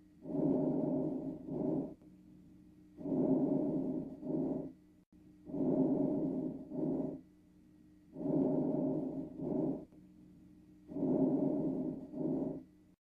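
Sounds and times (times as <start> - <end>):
slow even breathing: 0.2 - 2.0, 3.0 - 4.8, 5.5 - 7.2, 8.1 - 10.0, 10.9 - 12.7.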